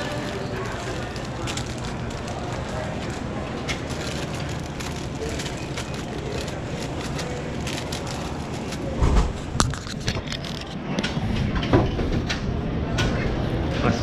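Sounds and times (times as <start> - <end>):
plastic snack packages crinkling: 0.0 - 9.0, 9.6 - 10.8.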